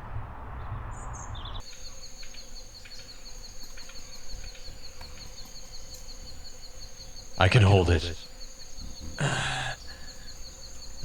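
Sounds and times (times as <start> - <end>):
crickets trilling: 1.4 - 11.0.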